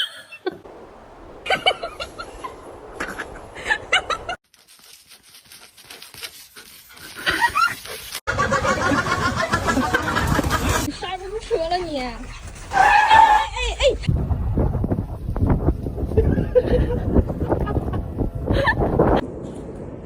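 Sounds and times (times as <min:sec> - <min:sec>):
people laughing: 0:01.4 - 0:04.4, 0:08.3 - 0:11.0.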